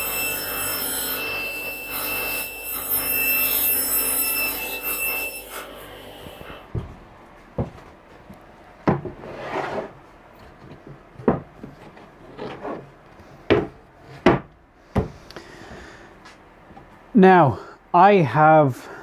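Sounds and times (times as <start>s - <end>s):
hollow wooden clunks: 6.7s - 9.2s, 9.8s - 15.9s
wooden boards sliding scrapes: 7.6s - 15.2s.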